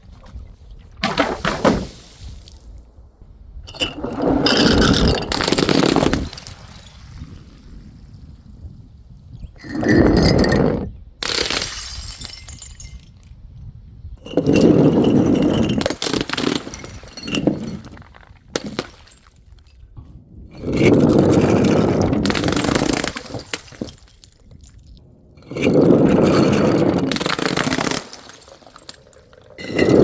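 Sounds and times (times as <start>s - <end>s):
glass shards clinking: 3.7s - 6.9s, 11.2s - 13.3s, 14.2s - 19.9s, 20.6s - 30.0s
glass shattering: 3.7s - 7.0s, 11.2s - 13.2s, 14.4s - 19.8s, 22.2s - 25.0s, 27.1s - 30.0s.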